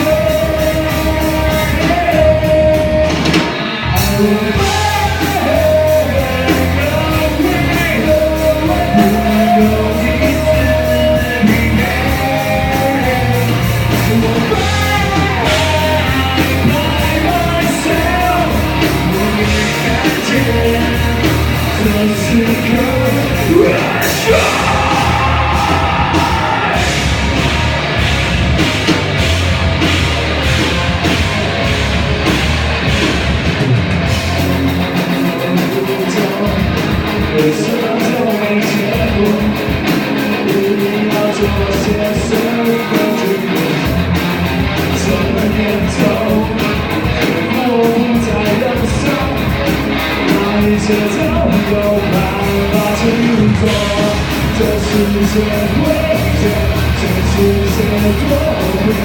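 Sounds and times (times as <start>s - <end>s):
person singing: 0.0s - 27.5s, 44.8s - 59.0s
rock band playing live: 0.0s - 59.0s.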